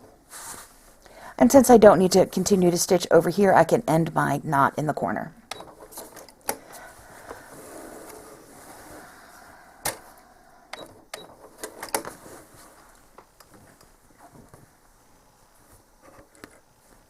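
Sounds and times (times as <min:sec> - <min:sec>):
fabric rustling: 0:00.2 - 0:01.0, 0:06.8 - 0:10.2, 0:11.5 - 0:17.0.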